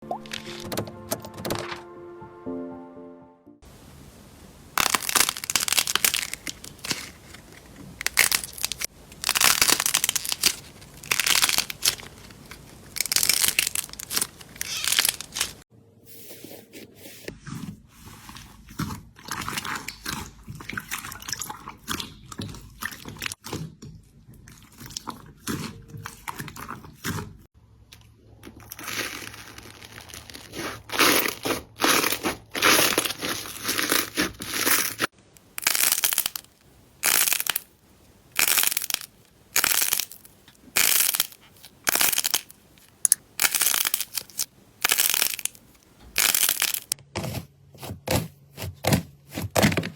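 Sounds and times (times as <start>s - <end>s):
slime crackling: 4.8s - 15.6s, 28.6s - 37.7s, 38.3s - 47.0s.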